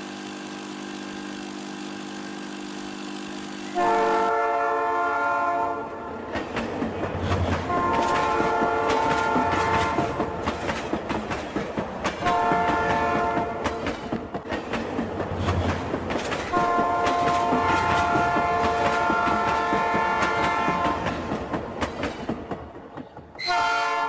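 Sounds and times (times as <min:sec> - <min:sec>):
train horn blasts: 0:03.7 - 0:06.2, 0:07.6 - 0:10.5, 0:12.2 - 0:13.9, 0:16.5 - 0:21.3, 0:23.4 - 0:24.0
train wheels clattering: 0:05.9 - 0:24.0.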